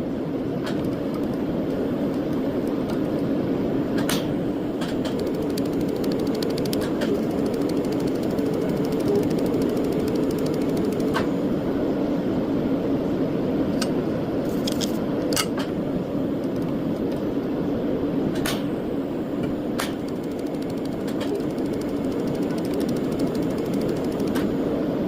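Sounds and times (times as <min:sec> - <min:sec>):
steady machine hum: 0:00.0 - 0:25.0
sharp irregular clicks: 0:00.6 - 0:03.3, 0:04.0 - 0:11.3, 0:16.4 - 0:17.2, 0:19.8 - 0:24.6.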